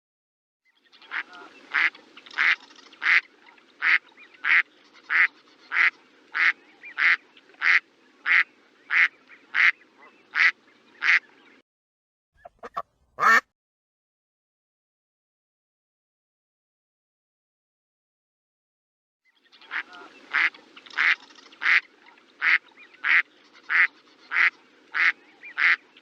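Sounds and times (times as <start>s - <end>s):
duck quacking: 1.1s - 11.2s, 12.4s - 13.5s, 19.7s - 25.8s.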